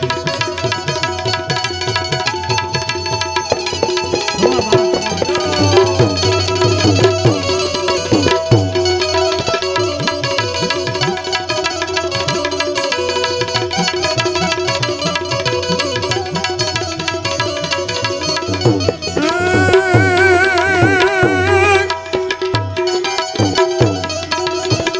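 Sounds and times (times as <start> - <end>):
rapid tabla strokes: 0.0 - 24.9
wavering held melody line: 1.9 - 24.9
steady held notes: 3.4 - 10.0.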